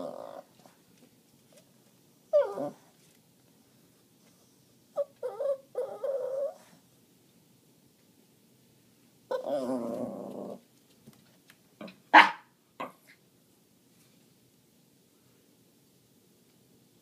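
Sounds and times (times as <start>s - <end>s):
dog whining: 0.0s - 0.6s, 2.3s - 2.9s, 5.0s - 6.8s, 9.3s - 10.6s.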